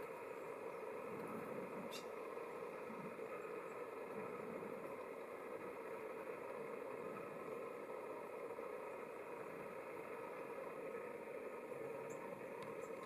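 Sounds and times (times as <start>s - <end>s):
steady mechanical hum: 0.0s - 13.0s.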